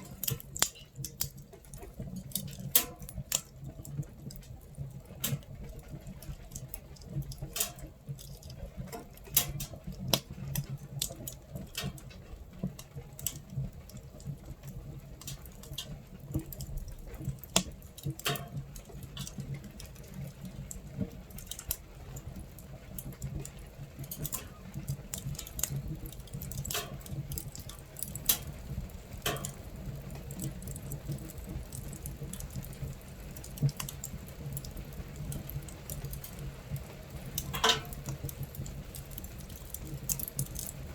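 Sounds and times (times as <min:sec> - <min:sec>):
rain pattering on tent: 0:00.0 - 0:40.9
stove fire crackling and popping: 0:00.0 - 0:40.9.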